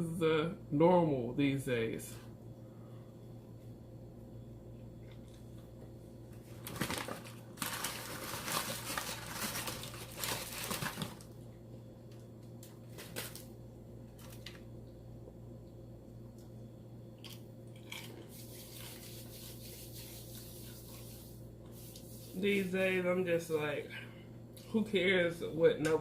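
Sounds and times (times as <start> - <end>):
fried chicken crackling: 6.6 - 11.3.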